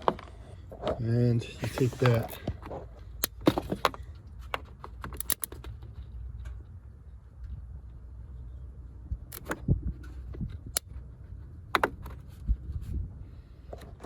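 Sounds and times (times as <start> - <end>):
low steady rumble: 0.0 - 14.0
metallic clicks of battery clamp: 5.2 - 5.6.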